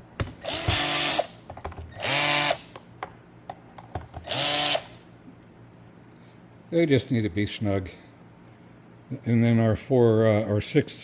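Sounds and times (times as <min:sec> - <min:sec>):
power drill driving screws: 0:00.4 - 0:02.7, 0:04.2 - 0:05.0.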